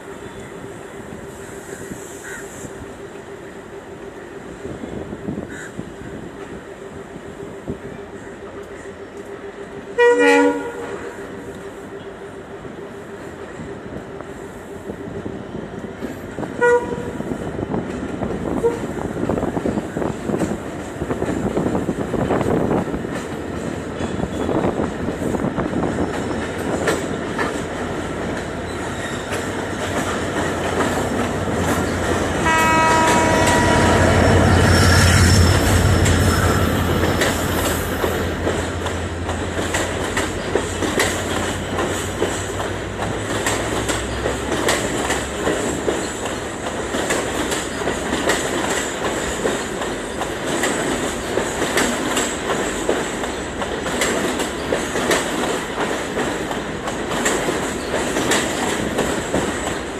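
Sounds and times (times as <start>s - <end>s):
train wheels clicking over rail joints: 0.0s - 59.9s
train horn: 9.9s - 11.3s, 16.6s - 17.3s, 18.6s - 18.9s, 32.3s - 37.6s.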